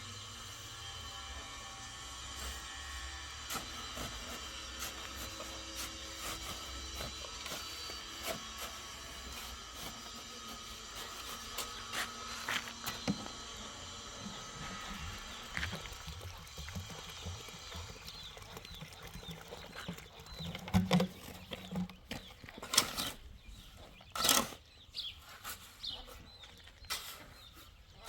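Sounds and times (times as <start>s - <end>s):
rough scraping strokes on wood: 0.5s - 16.2s, 20.7s - 26.3s.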